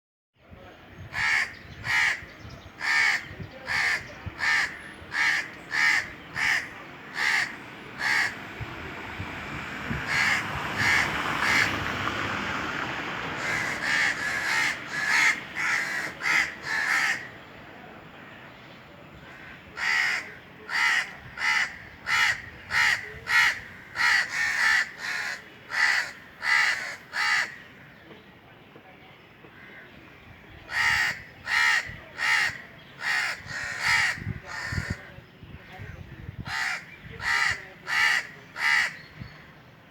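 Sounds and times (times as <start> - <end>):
crows cawing: 1.1 - 8.4, 10.1 - 11.9, 13.4 - 17.3, 19.2 - 28.0, 29.5 - 29.9, 30.7 - 35.1, 36.5 - 39.1.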